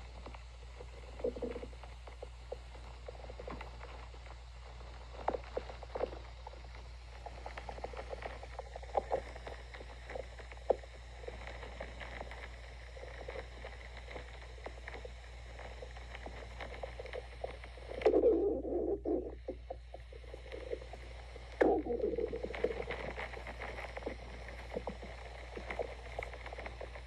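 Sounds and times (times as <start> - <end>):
stomach growling gurgles: 0.0 - 27.0.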